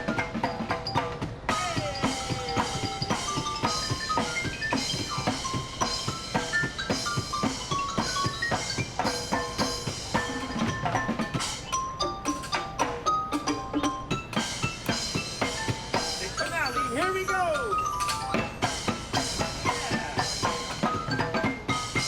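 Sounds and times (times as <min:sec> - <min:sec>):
bright pitched mallet notes: 0:00.0 - 0:22.0
drum and metal strikes: 0:00.0 - 0:22.0.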